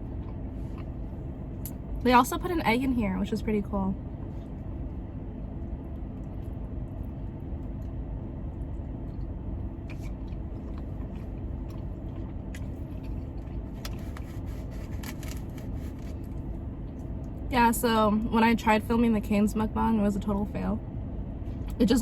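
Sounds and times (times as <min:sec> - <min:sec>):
car air conditioning hum: 0:00.0 - 0:22.0
person eating: 0:09.8 - 0:16.4.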